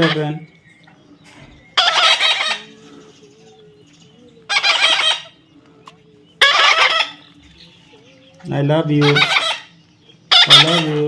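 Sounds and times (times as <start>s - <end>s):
parrot squawking: 0.0s - 0.4s, 1.7s - 2.7s, 4.4s - 5.4s, 6.3s - 7.4s, 8.9s - 11.0s.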